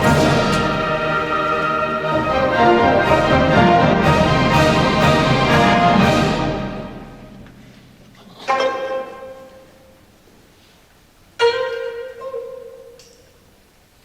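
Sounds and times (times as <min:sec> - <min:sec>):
plucked notes ringing: 0:00.0 - 0:04.5
orchestral music: 0:00.0 - 0:07.6.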